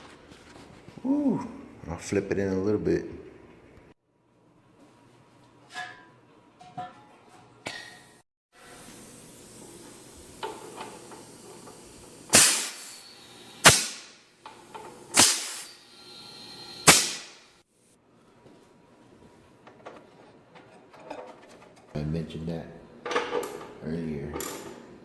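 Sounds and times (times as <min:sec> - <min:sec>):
sharp hissing bursts: 0:08.7 - 0:14.2, 0:15.1 - 0:17.6.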